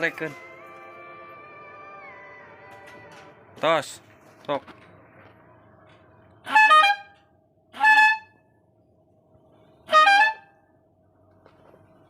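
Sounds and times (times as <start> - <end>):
air horn blasts: 6.4 - 8.4, 9.8 - 10.6.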